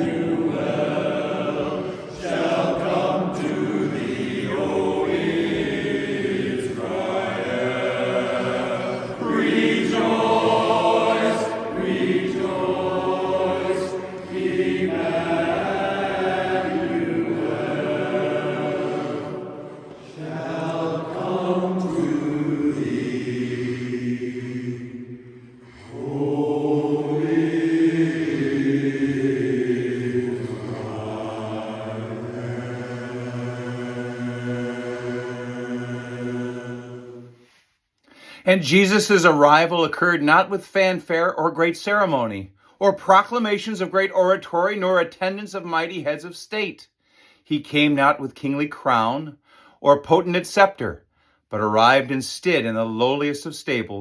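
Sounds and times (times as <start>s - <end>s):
barbershop chorus singing a cappella: 0.0s - 37.6s.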